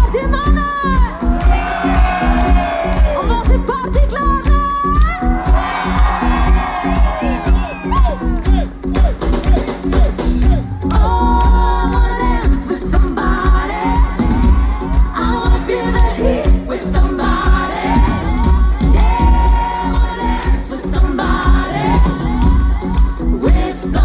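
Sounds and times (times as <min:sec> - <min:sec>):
woman singing: 0:00.0 - 0:01.5, 0:02.9 - 0:05.6, 0:10.4 - 0:24.0
crowd cheering: 0:00.0 - 0:24.0
pop band with heavy beat: 0:00.0 - 0:24.0.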